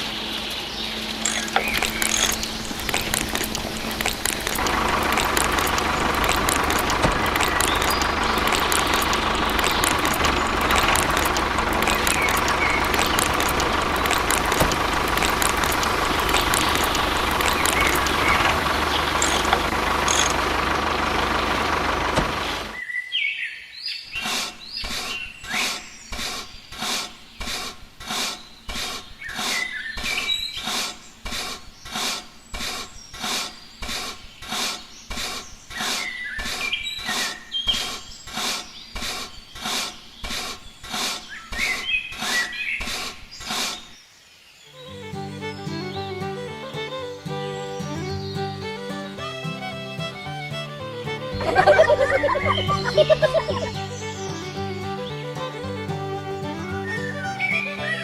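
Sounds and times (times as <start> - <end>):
small motor whining: 0.0 - 22.8, 46.2 - 54.2
birds chirping: 0.0 - 55.5, 56.1 - 58.0
rhythmic rubbing strokes: 1.2 - 20.4, 51.2 - 53.8.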